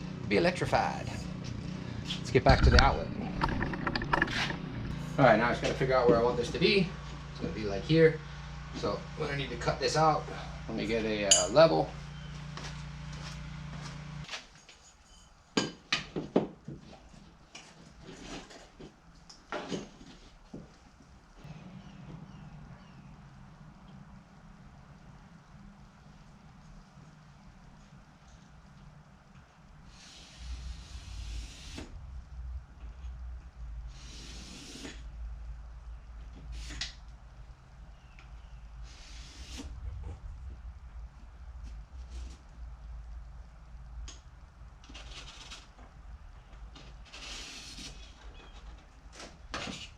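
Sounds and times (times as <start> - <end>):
low steady hum: 0.0 - 15.9, 17.0 - 49.9
tools clinking and knocking: 11.3 - 11.6
short scraping strokes: 38.8 - 40.1.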